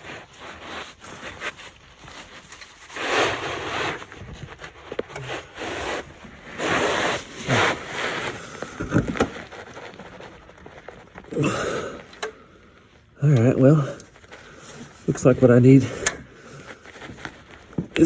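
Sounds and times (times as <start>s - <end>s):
man breathing heavily: 11.2s - 13.0s, 13.7s - 15.1s, 15.7s - 17.2s
man grunting: 11.3s - 12.0s.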